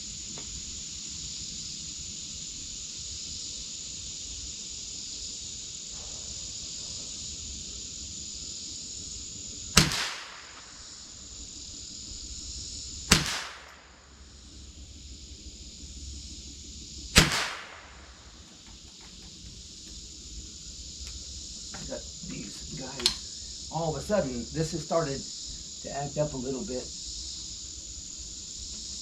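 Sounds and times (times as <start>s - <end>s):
high insect buzz: 0.0s - 29.0s
rifle shots with echo: 9.7s - 11.0s, 13.1s - 14.0s, 17.2s - 18.4s.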